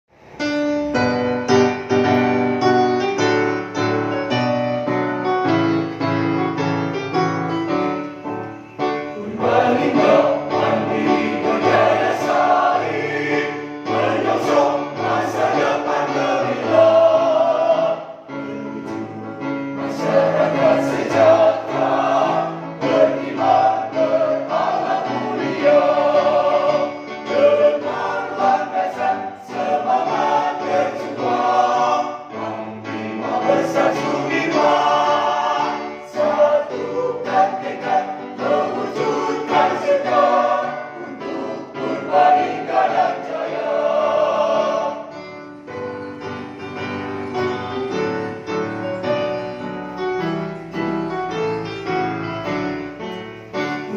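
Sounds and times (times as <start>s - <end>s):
keyboard march chords: 0.2s - 53.9s
mixed choir singing a march: 9.0s - 49.0s.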